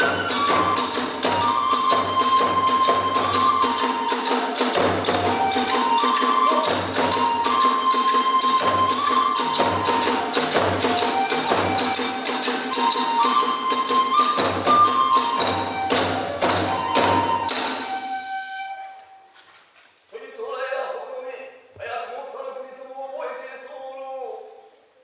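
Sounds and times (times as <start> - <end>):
fast drum strikes: 0.0 - 17.9
bamboo flute melody: 0.0 - 19.5.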